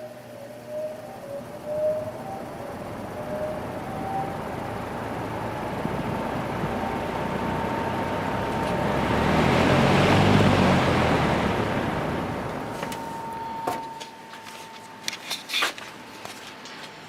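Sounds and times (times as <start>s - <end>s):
box fan air rushing: 0.0s - 13.4s.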